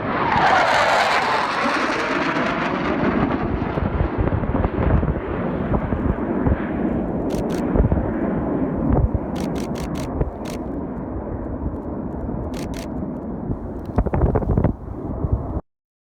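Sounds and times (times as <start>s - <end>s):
jet engines crackling rumble: 0.0s - 15.6s
camera shutter clicks: 7.3s - 7.8s, 9.4s - 10.8s, 12.5s - 13.0s.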